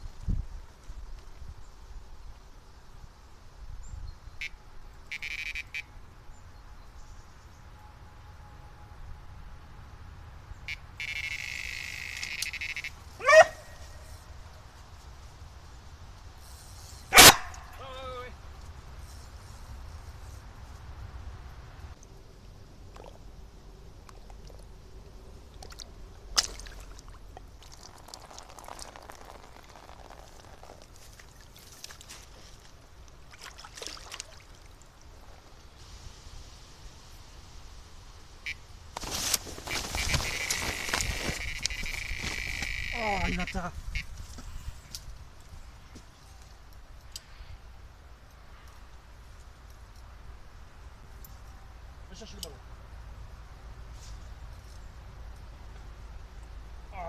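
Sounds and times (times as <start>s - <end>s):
bite alarm beeps: 10.7s - 12.9s
scattered ticks: 11.0s - 12.9s
water splashes and drips: 22.8s - 23.4s, 24.0s - 35.8s.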